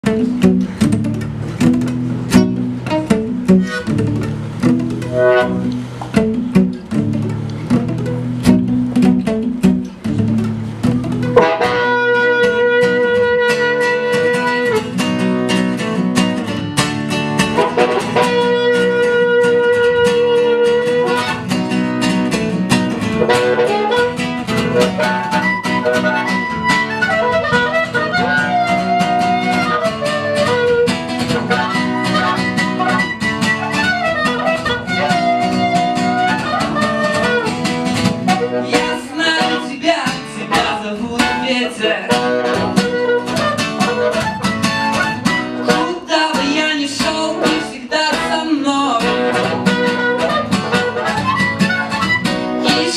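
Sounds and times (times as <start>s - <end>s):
guitar strumming: 0.0s - 52.9s
melody of long held notes: 0.1s - 15.0s, 17.5s - 38.8s.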